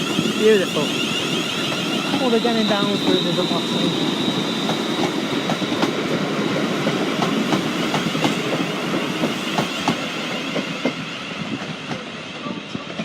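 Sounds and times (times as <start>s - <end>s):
train wheels clicking over joints: 0.0s - 12.1s
train rumble: 0.0s - 13.0s.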